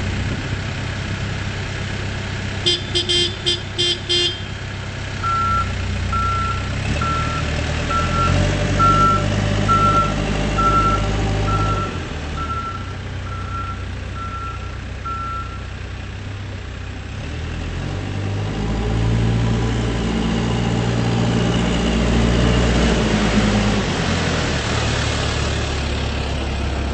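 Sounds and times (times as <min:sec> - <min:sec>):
diesel engine running: 0:00.0 - 0:26.9
back-up alarm beeping: 0:05.2 - 0:15.6.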